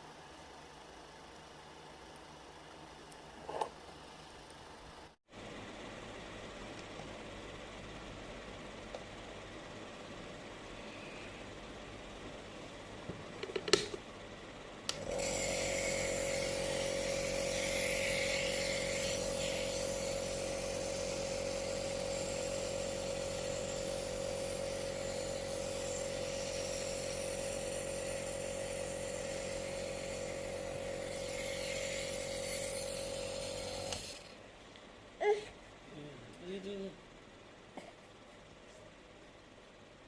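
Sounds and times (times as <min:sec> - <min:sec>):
small electric motor humming: 0:14.9 - 0:34.4.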